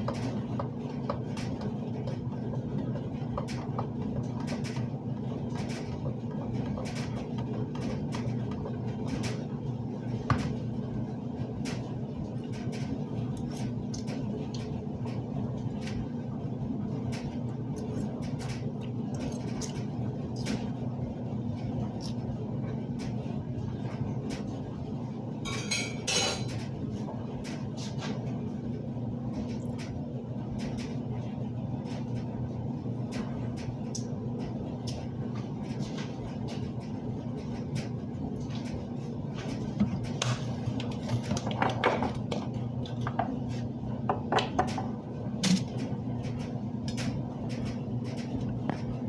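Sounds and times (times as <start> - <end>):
steady low hum: 0.0 - 49.0
dishes and cutlery clinking: 25.5 - 26.6.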